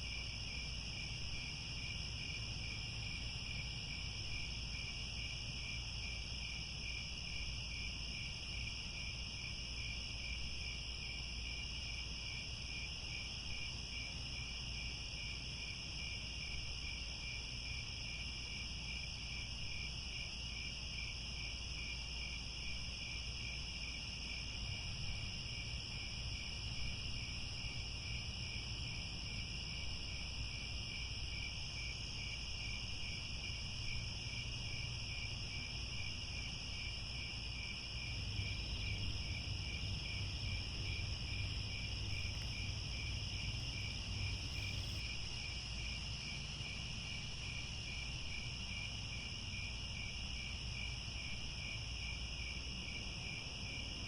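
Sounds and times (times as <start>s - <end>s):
crickets trilling: 24.6s - 45.1s
low rumble: 38.0s - 45.0s.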